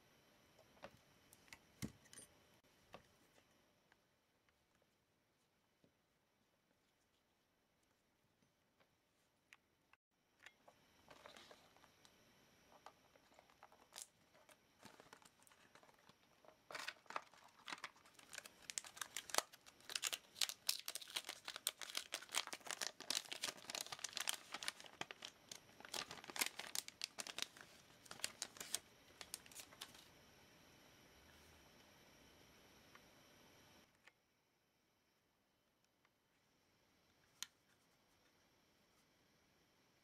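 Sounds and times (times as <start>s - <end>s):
plastic packaging crinkling: 12.8s - 30.1s.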